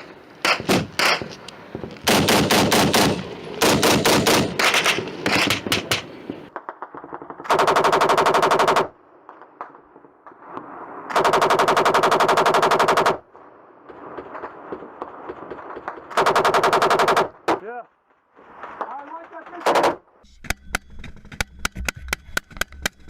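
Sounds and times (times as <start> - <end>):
machine gun bursts: 0.0 - 1.4, 2.0 - 6.4
faint scattered gunshot cracks: 0.0 - 7.4.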